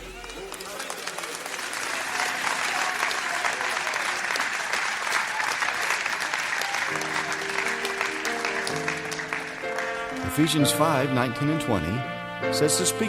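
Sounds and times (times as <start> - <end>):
congregation applauding: 0.0 - 12.0
held instrumental chords: 6.9 - 13.0.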